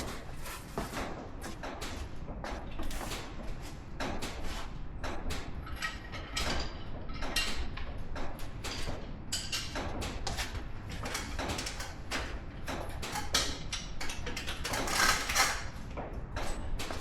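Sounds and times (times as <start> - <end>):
metal tools knocking and scraping: 5.6 - 15.8.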